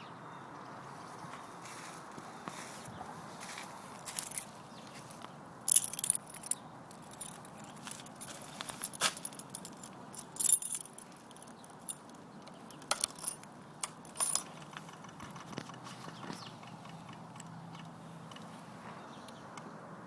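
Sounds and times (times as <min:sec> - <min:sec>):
keys jingling: 0:04.0 - 0:04.6, 0:05.7 - 0:14.8.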